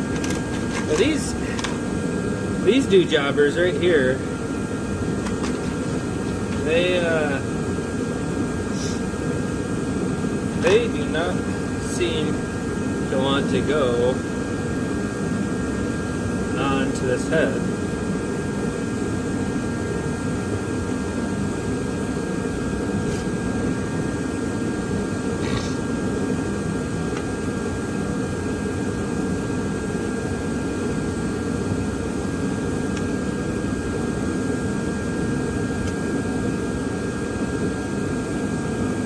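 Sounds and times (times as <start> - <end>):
fan drone with rushing air: 0.0 - 39.0.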